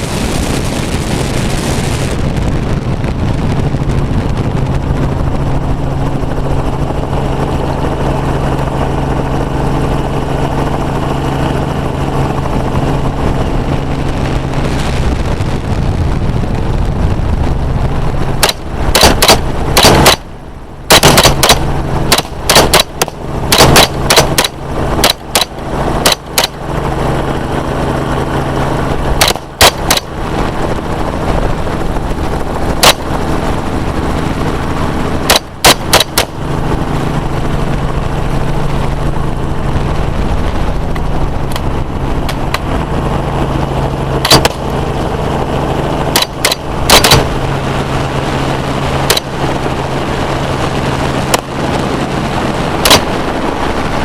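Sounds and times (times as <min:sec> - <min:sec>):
helicopter running: 0:00.0 - 0:54.0
gunshots: 0:18.4 - 0:20.3, 0:20.9 - 0:26.6, 0:29.2 - 0:30.1, 0:35.3 - 0:36.4, 0:44.2 - 0:44.7, 0:46.1 - 0:47.4, 0:52.8 - 0:53.1.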